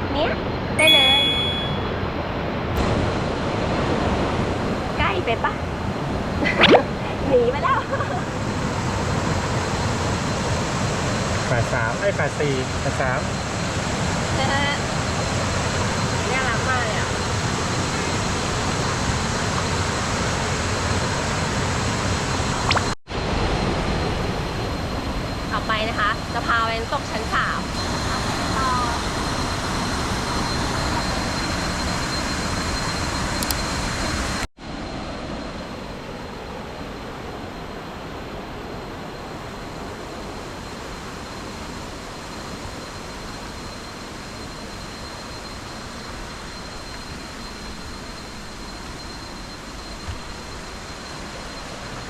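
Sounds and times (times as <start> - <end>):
thin high-pitched tone: 0.8 - 2.0.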